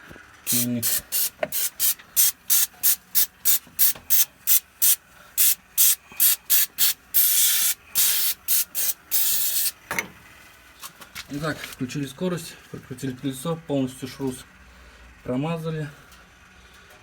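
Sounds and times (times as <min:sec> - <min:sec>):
aerosol spray hissing: 0:00.5 - 0:09.8.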